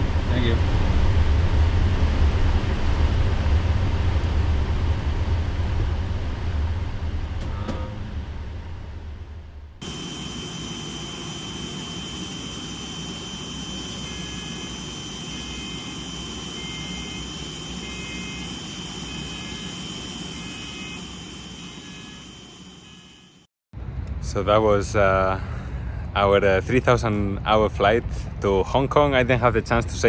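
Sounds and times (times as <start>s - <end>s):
jet aircraft whine: 9.8s - 26.5s.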